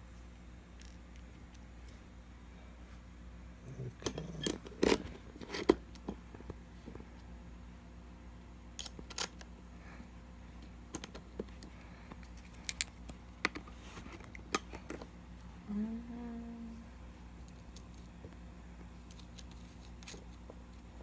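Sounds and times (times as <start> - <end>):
small parts clicking and tapping: 8.8 - 9.5, 10.9 - 15.1, 19.0 - 20.9
short low hum: 15.1 - 19.1.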